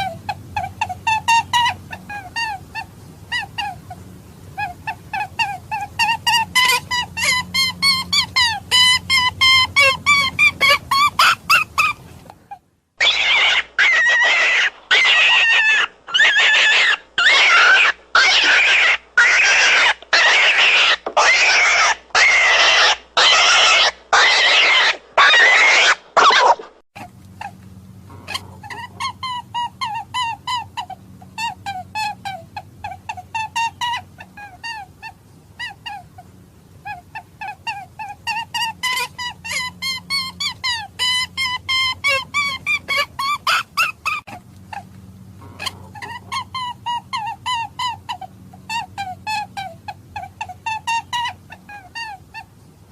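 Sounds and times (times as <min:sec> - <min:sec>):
hare screaming: 0:13.0 - 0:26.6
short high squeaks: 0:13.0 - 0:29.5.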